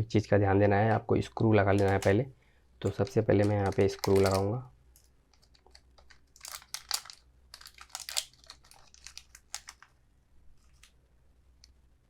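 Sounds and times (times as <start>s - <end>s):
rustling and small clicks: 1.7s - 2.2s, 2.8s - 10.0s, 10.6s - 11.0s.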